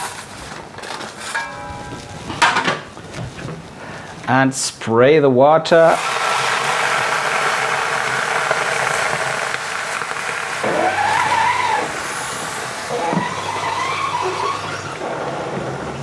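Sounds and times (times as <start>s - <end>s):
steam hissing in oven: 5.8s - 16.0s.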